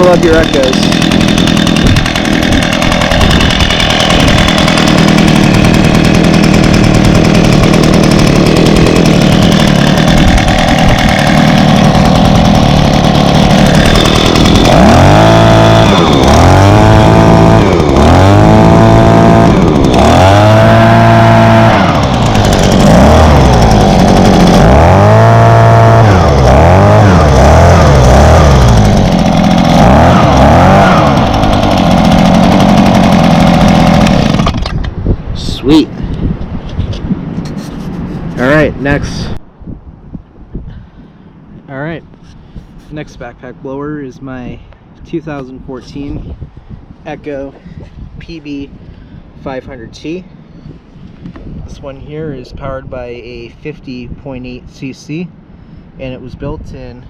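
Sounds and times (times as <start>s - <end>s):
leaf blower engine revving: 0.0s - 36.2s.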